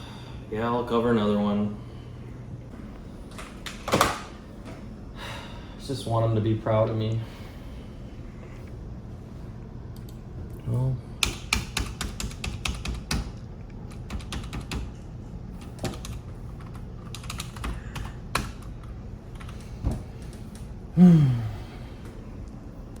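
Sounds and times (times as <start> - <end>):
computer keyboard typing: 11.2 - 20.7
person groaning: 21.0 - 21.9.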